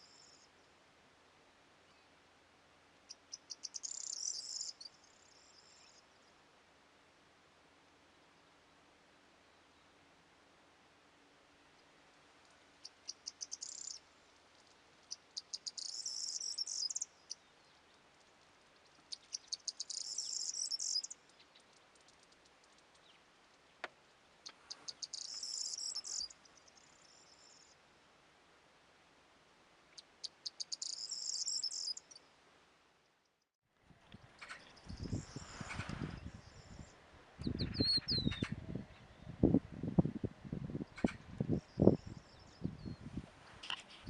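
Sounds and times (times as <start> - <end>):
songbird singing trill: 0.0 - 0.6, 3.0 - 6.3, 12.8 - 27.8, 29.9 - 32.3, 34.1 - 39.5, 40.8 - 44.0.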